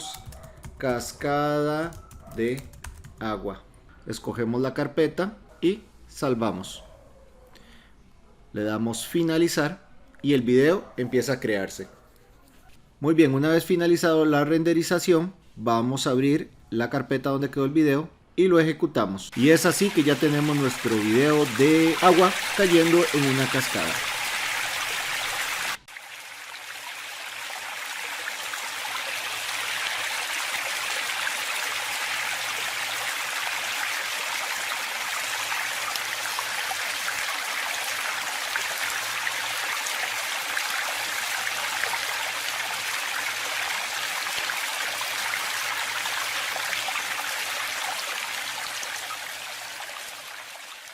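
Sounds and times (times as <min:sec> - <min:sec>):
waterfall rushing: 0:19.4 - 0:25.9.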